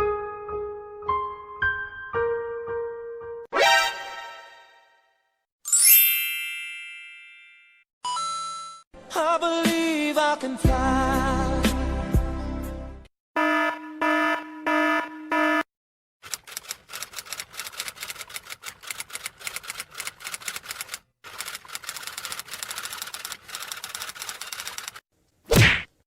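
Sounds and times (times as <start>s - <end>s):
rapid typing clicks: 16.2s - 25.0s.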